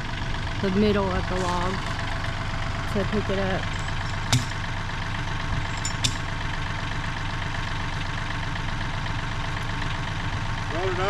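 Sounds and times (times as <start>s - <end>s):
tractor diesel engine idling: 0.0s - 11.0s
sharp knocks: 4.2s - 4.6s, 5.5s - 6.3s.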